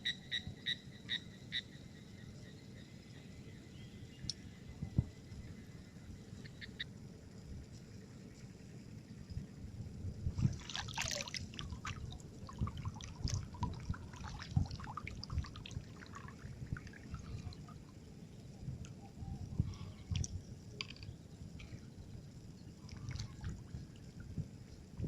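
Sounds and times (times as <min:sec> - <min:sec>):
water splashing and dripping: 0:10.3 - 0:17.8, 0:22.8 - 0:24.4.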